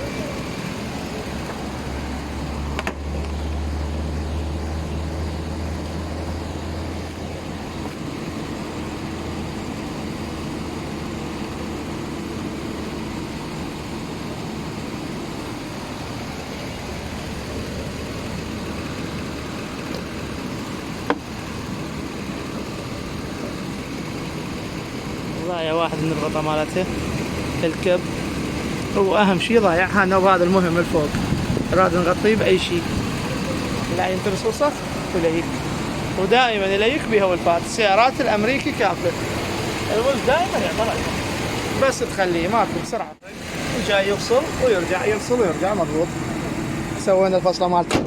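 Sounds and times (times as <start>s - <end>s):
car engine idling: 0.0s - 47.9s.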